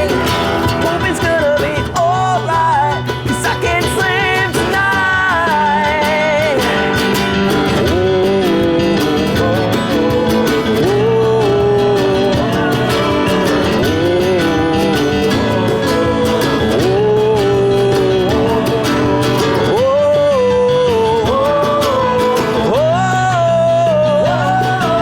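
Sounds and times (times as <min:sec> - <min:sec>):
sliding melody line: 0:00.0 - 0:25.0
strummed acoustic guitars: 0:00.0 - 0:25.0.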